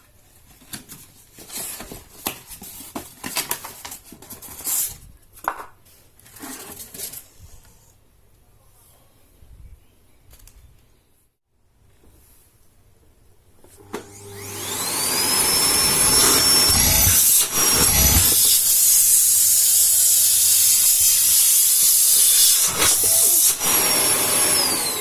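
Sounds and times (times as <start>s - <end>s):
electric motor whining: 13.9s - 19.1s.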